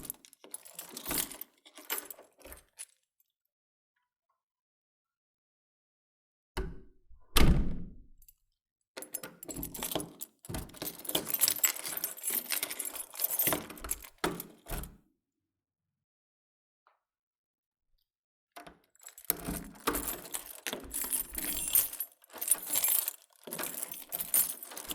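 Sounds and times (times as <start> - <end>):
keys jangling: 0.0 - 2.8, 9.0 - 14.9, 19.0 - 24.9.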